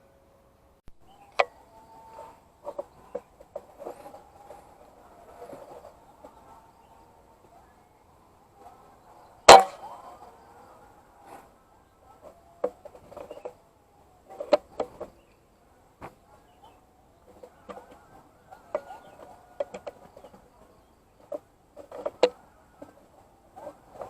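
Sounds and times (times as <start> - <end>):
faint background calls: 0.0 - 24.0
air rifle shot: 9.5 - 10.0.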